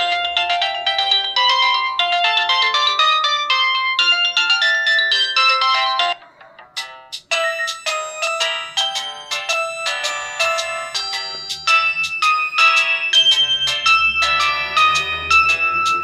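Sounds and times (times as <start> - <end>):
mobile phone ringtone: 0.0 - 16.0.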